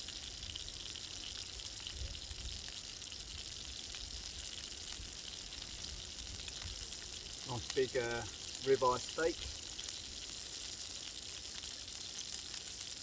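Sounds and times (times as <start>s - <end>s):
steak sizzling in a pan: 0.0s - 13.0s.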